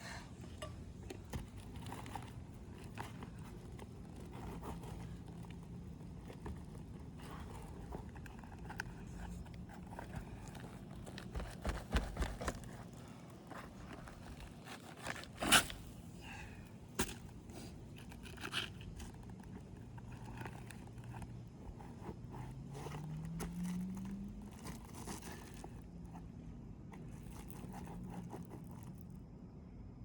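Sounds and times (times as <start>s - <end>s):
shingles scraping: 1.2s - 16.1s, 17.0s - 25.8s.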